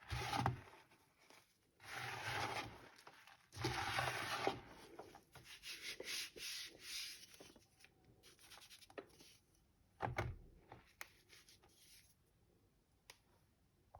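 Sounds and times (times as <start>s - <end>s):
chalk crunching and rubbing: 5.4s - 7.6s.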